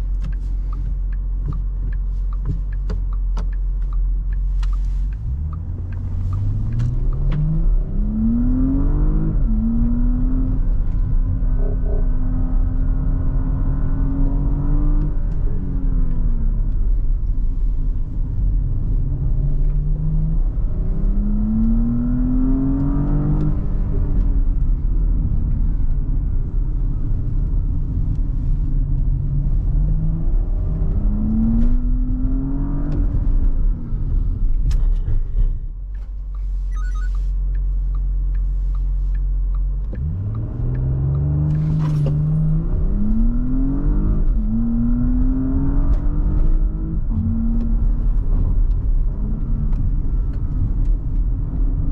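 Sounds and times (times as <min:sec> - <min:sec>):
car engine accelerating through gears: 0:00.0 - 0:51.9.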